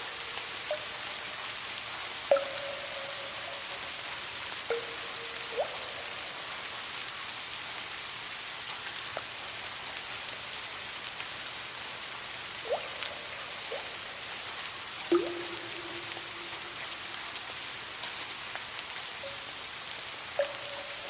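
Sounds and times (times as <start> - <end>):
water drops plinking: 0.0 - 6.6, 12.6 - 14.2, 15.1 - 17.4, 20.3 - 21.0
soft rain hiss: 0.0 - 21.0.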